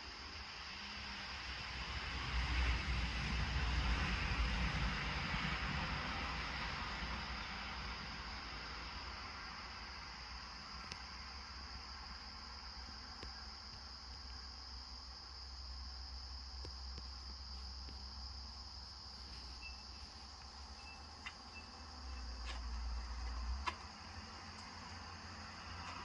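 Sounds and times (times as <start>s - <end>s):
crickets chorus: 0.0s - 26.0s.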